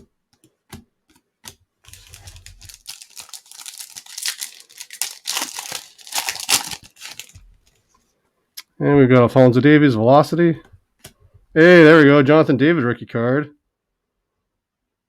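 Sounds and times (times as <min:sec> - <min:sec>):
foil wrapper tearing and crinkling: 0:01.8 - 0:07.4.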